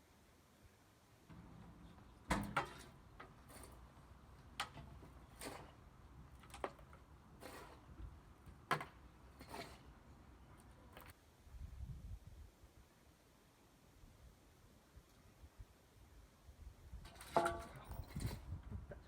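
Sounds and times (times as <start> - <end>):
short scrapes: 7.4 - 7.9, 9.4 - 10.1.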